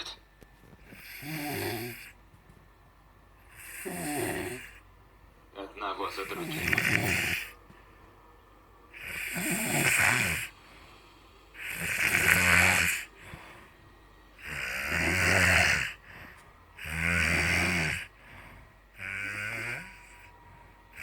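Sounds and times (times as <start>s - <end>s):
loud snoring: 0.9s - 2.2s, 3.5s - 4.8s, 6.3s - 7.6s, 8.9s - 10.6s, 11.6s - 13.6s, 14.4s - 16.2s, 16.8s - 18.3s, 18.9s - 20.3s.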